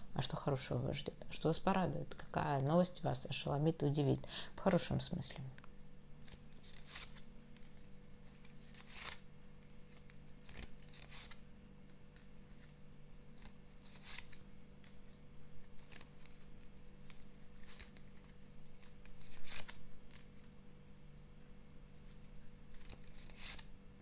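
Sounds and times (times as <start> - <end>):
steady low hum: 0.0 - 24.0
card deck being shuffled: 6.2 - 20.6, 22.0 - 23.7.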